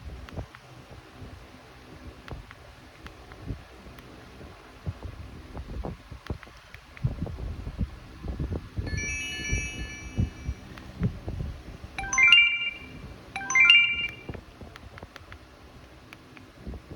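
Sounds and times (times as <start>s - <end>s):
phone electronic alert tones: 8.9s - 10.6s, 12.0s - 14.3s.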